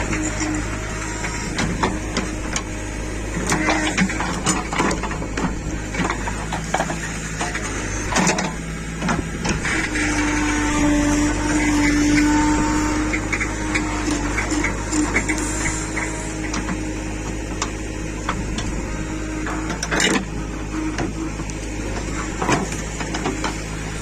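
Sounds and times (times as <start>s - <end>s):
diesel engine running: 0.0s - 24.0s
metal clanks and knocks: 3.4s - 18.8s, 19.4s - 20.3s, 20.9s - 23.6s.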